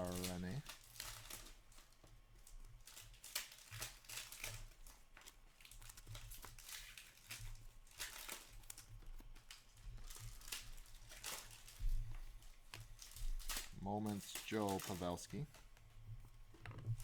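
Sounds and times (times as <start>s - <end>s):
trading cards rustling: 0.0s - 1.2s, 8.0s - 15.8s.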